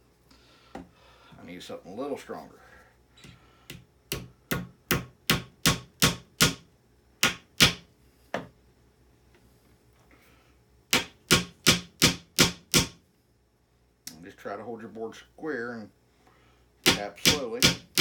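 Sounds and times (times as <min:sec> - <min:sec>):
hammer driving nails into wood: 0:03.7 - 0:06.6, 0:07.2 - 0:07.8, 0:10.9 - 0:13.0, 0:16.8 - 0:18.0.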